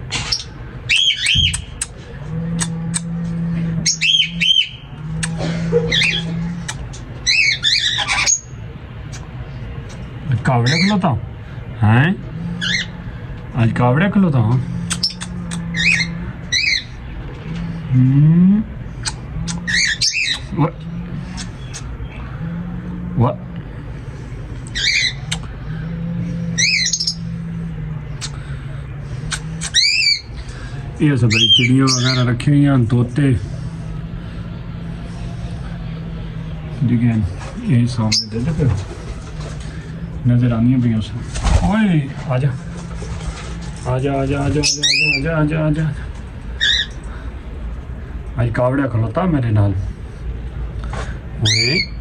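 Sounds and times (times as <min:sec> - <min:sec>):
parrots squawking: 0:00.0 - 0:09.4, 0:10.6 - 0:11.0, 0:12.3 - 0:18.0, 0:18.9 - 0:32.4, 0:33.4 - 0:40.2, 0:41.7 - 0:45.4, 0:46.4 - 0:47.3, 0:51.4 - 0:52.0
steady low hum: 0:00.0 - 0:52.0.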